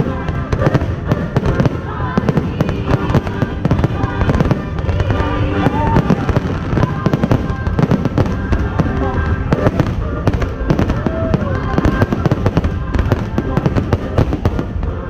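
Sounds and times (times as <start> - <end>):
firework whistling: 0.0 - 14.8
fireworks bangs and crackles: 0.0 - 15.0
music playing: 0.0 - 15.0.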